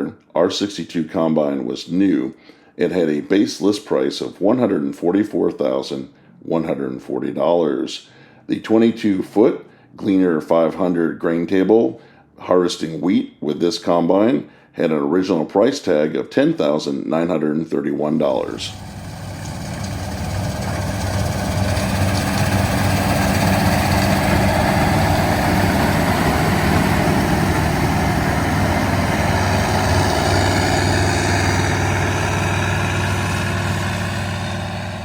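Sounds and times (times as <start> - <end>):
broad mechanical rush: 18.3 - 35.0
combine harvester engine hum: 18.3 - 35.0.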